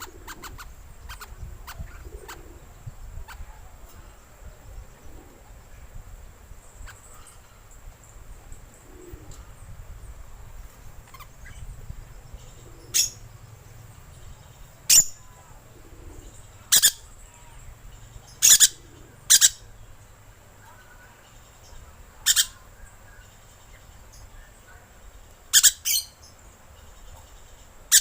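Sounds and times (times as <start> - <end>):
lorikeet screeching: 16.7 - 17.6, 18.4 - 19.6, 22.2 - 22.7, 25.5 - 26.2.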